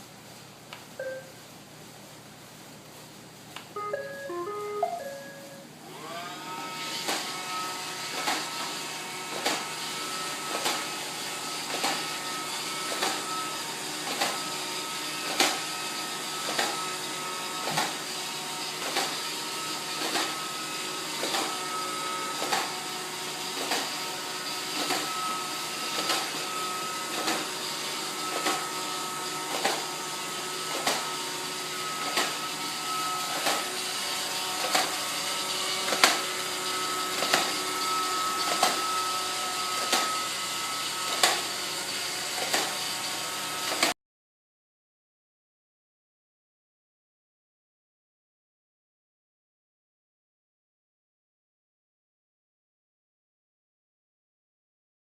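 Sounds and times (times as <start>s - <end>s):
robot vacuum motor whine: 5.8s - 43.9s.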